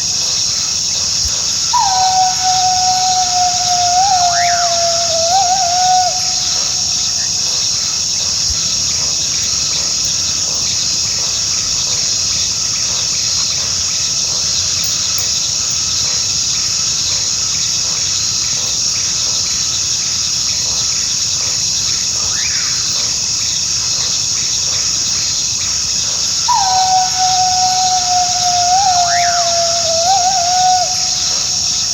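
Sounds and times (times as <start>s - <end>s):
crickets chirping: 0.0s - 31.9s
coyote howling: 1.6s - 6.8s, 26.4s - 31.7s.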